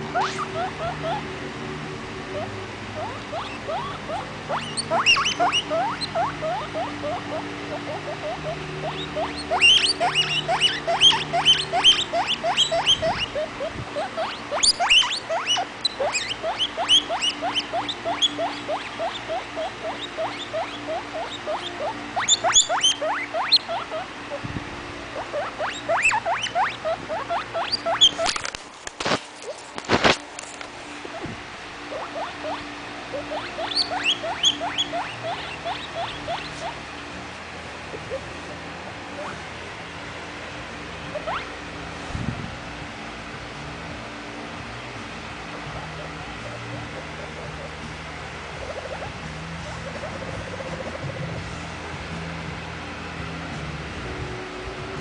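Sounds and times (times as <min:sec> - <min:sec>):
guinea pig squealing: 0:00.0 - 0:01.3, 0:02.3 - 0:24.4, 0:25.2 - 0:28.6, 0:31.1 - 0:36.8, 0:37.9 - 0:38.3, 0:39.2 - 0:39.4, 0:41.1 - 0:41.6, 0:45.7 - 0:47.9, 0:48.6 - 0:51.3.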